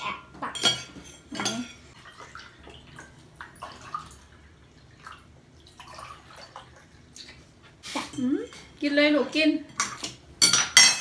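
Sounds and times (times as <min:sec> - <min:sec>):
cutlery clinking on plates: 0:00.6 - 0:01.8, 0:09.8 - 0:11.0.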